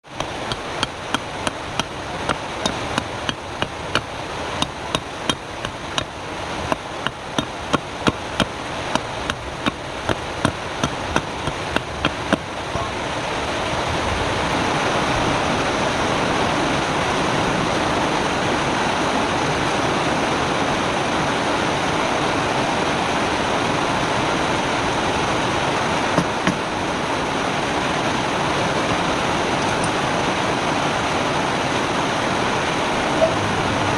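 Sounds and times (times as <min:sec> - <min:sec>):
rapid regular knocks: 0:00.0 - 0:12.9
steady rushing noise: 0:00.0 - 0:33.9.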